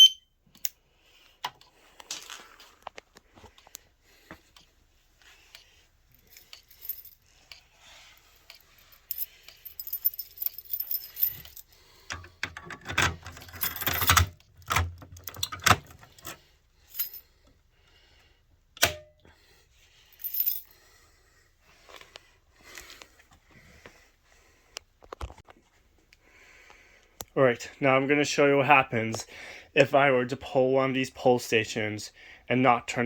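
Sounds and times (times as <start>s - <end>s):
metallic jangling and rattles: 6.1s - 7.6s, 8.2s - 17.2s.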